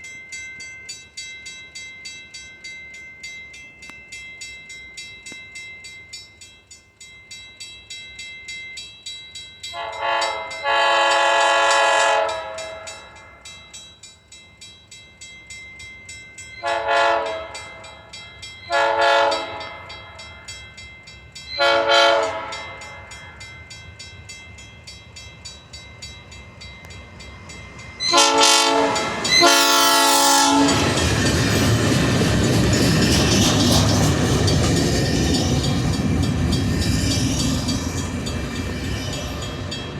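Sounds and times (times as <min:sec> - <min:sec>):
train wheel and rail noise: 0:00.0 - 0:39.9
locomotive horn blasts: 0:09.8 - 0:13.2, 0:16.6 - 0:18.0, 0:18.7 - 0:19.9, 0:21.6 - 0:23.0, 0:28.0 - 0:31.0.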